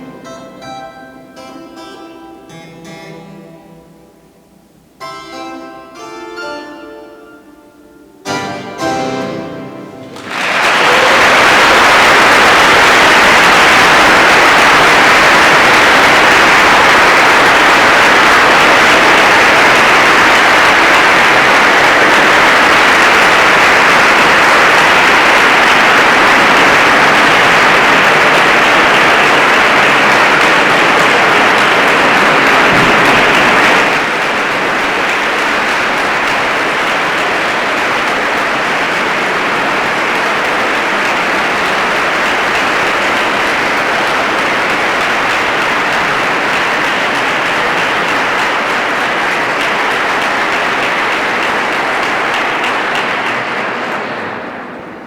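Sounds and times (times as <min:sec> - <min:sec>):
audience applause: 0:00.0 - 0:00.6, 0:08.3 - 0:55.0
keyboard piece: 0:00.0 - 0:10.4.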